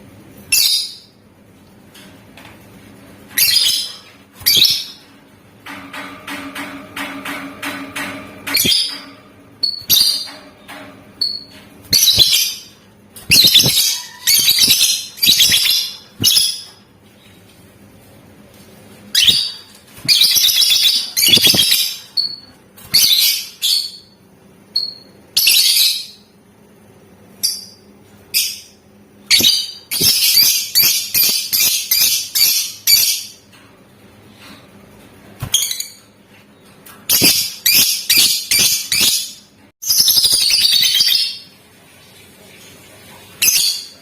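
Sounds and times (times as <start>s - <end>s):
lovebirds chattering: 13.3s - 16.6s.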